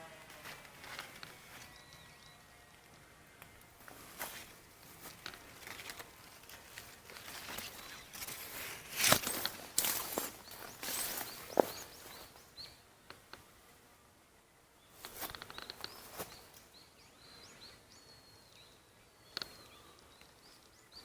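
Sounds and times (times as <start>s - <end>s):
rustling and crackling: 3.7s - 12.4s.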